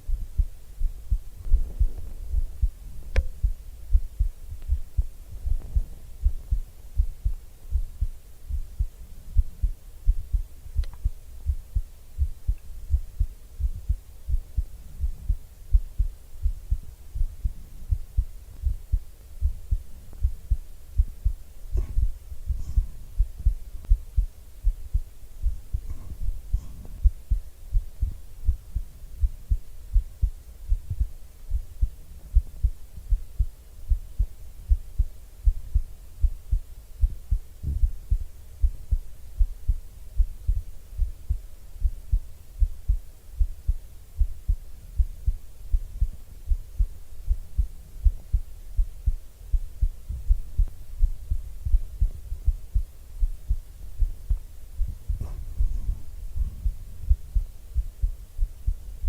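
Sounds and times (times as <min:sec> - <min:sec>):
heartbeat thumps: 0:00.0 - 0:59.0
faint brushing: 0:50.7 - 0:59.0.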